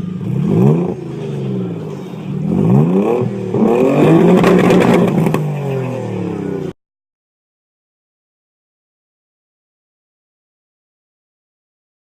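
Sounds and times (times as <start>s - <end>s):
car engine revving: 0.0s - 6.8s.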